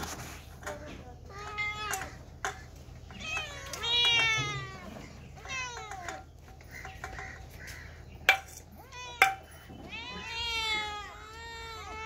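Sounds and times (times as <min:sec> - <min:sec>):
cat meowing: 0:03.1 - 0:06.3, 0:08.8 - 0:12.0.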